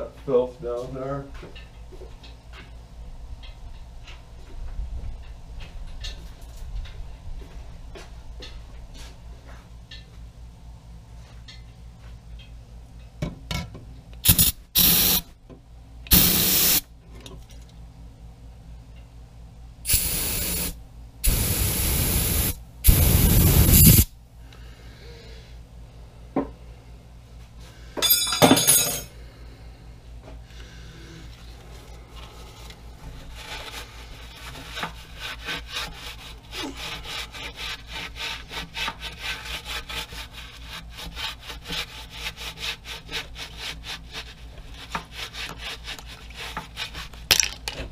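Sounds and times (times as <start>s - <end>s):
loud hissing bursts: 14.3s - 15.3s, 16.1s - 16.8s, 19.9s - 24.1s.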